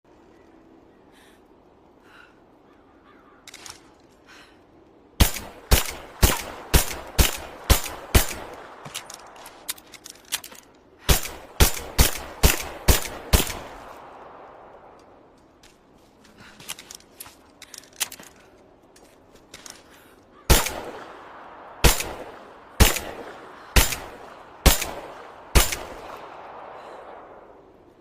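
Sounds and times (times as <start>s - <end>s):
light metallic clicks: 14.9s - 20.7s
suppressed revolver shots: 20.5s - 26.8s.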